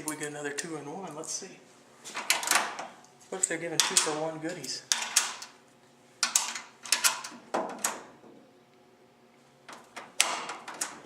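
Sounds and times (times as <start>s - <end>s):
vending machine clacks and rattles: 3.5s - 5.5s.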